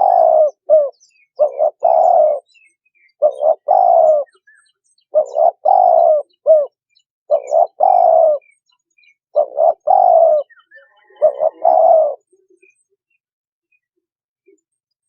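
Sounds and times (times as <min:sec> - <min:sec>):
dove cooing: 0:00.0 - 0:08.6, 0:09.3 - 0:12.7.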